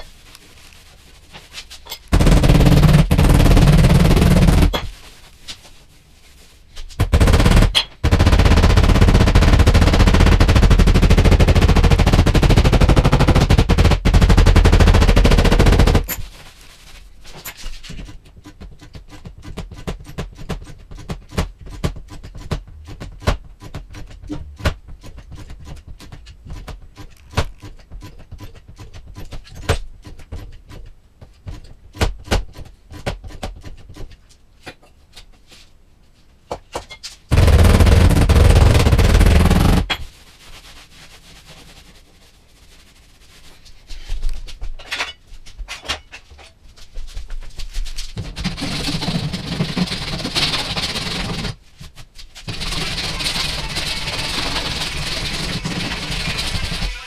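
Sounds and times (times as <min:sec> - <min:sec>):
rapid-firing power tool: 0:52.5 - 0:57.0.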